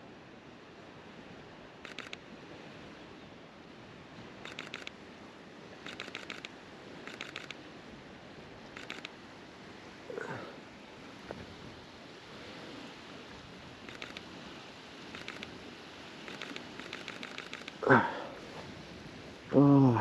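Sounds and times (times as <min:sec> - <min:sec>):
camera shutter rapid clicks: 0:01.9 - 0:02.2, 0:04.4 - 0:04.9, 0:05.8 - 0:06.5, 0:07.1 - 0:07.6, 0:08.8 - 0:09.1, 0:13.9 - 0:14.3, 0:15.2 - 0:15.5, 0:16.3 - 0:17.8.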